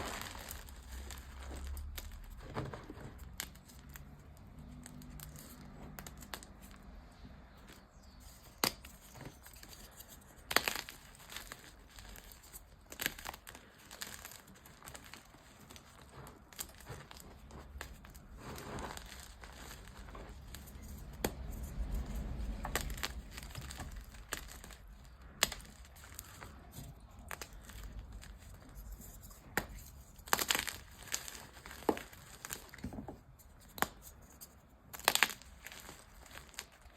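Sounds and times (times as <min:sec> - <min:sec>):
chalk crumbling: 0:00.0 - 0:36.9
sharp crisp cracks: 0:08.4 - 0:17.9, 0:29.4 - 0:32.8.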